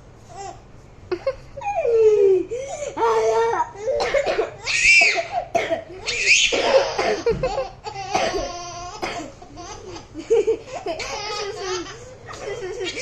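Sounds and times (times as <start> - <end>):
person coughing: 4.0 - 4.6, 5.2 - 5.9, 6.5 - 7.4, 8.1 - 9.4.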